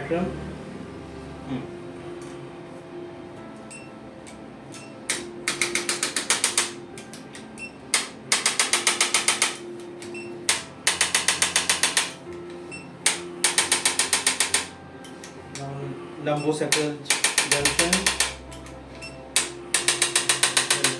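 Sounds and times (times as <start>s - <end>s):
adjusting gun rapid clicking: 8.0s - 9.6s, 10.5s - 12.2s, 13.1s - 14.7s, 16.7s - 18.7s, 19.4s - 20.9s.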